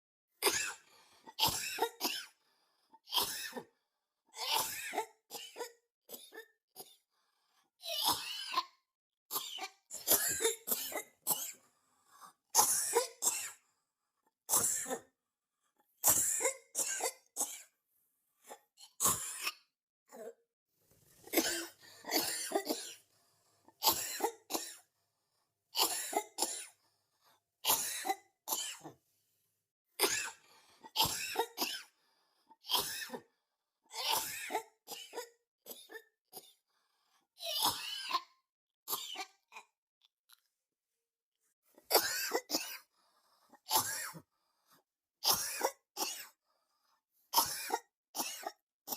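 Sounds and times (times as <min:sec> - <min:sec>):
person coughing: 0:09.4 - 0:11.6, 0:21.3 - 0:23.0.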